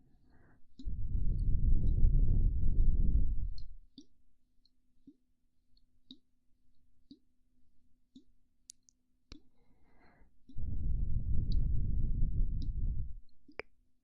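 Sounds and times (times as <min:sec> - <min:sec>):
faint steady hum: 0:00.2 - 0:03.9, 0:09.6 - 0:13.6
soft mouth clicks: 0:08.2 - 0:13.8.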